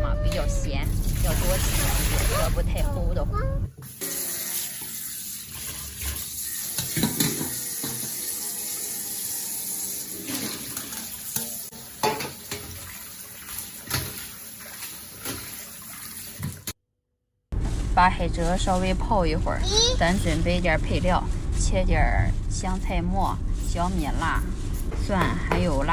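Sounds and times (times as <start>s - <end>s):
tap water running into basin: 0.8s - 2.8s, 3.8s - 16.8s
splashes and knocks: 10.3s - 16.8s.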